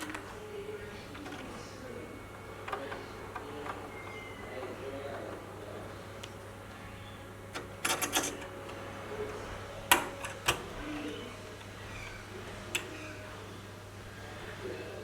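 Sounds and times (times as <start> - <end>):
small hard parts clicking: 7.5 - 8.8.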